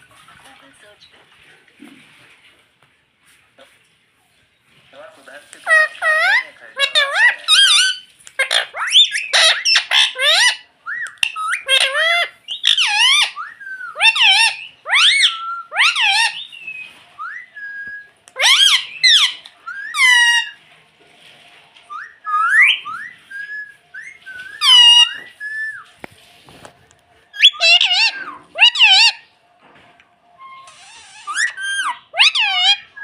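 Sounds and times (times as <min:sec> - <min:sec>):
parrot squawks and whistled calls: 0:05.6 - 0:20.6, 0:21.9 - 0:26.0, 0:27.3 - 0:29.3, 0:30.4 - 0:33.0.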